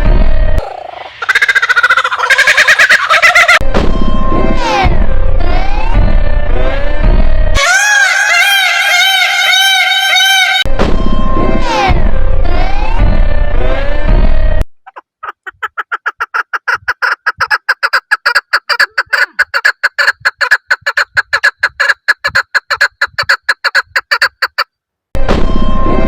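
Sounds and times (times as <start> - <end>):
bird calling rapid notes: 0.6 - 3.6, 14.9 - 24.7.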